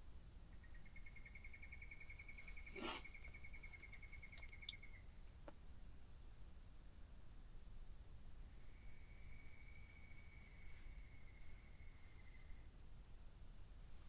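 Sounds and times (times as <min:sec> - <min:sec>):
faint click: 0:03.8 - 0:05.6.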